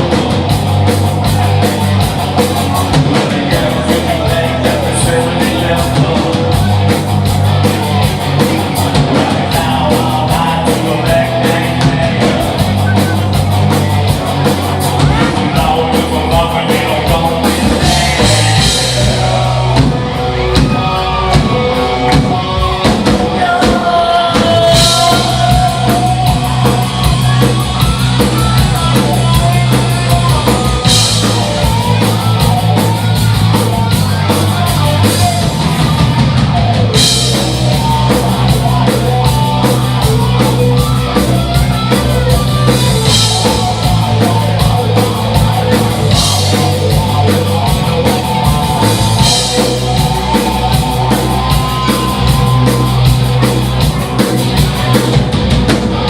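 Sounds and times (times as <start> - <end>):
rock band playing live: 0.0 - 56.0
person singing: 1.4 - 7.0, 8.4 - 13.3, 15.0 - 36.0.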